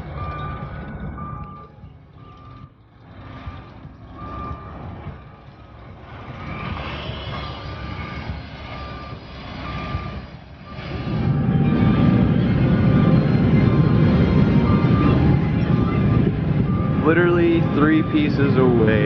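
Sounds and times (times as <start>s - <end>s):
backup alarm beeping: 0.0s - 2.8s, 8.7s - 19.0s
outdoor noise: 0.0s - 19.0s
low rumble: 8.0s - 19.0s.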